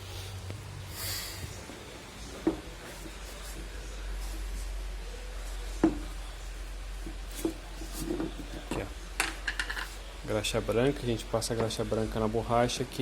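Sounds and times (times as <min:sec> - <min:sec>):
low steady hum: 0:00.0 - 0:13.0
knocks of tools handled: 0:07.4 - 0:10.0.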